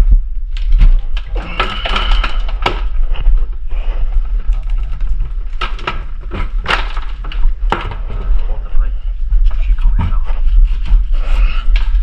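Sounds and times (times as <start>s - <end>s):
hand tools clicking and knocking: 0.6s - 3.3s, 4.4s - 8.4s.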